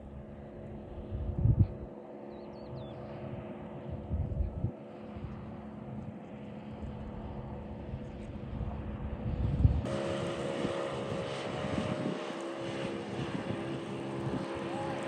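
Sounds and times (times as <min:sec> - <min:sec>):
engine hum: 0:00.0 - 0:15.0
gusting low rumble: 0:01.0 - 0:01.9, 0:03.9 - 0:04.8.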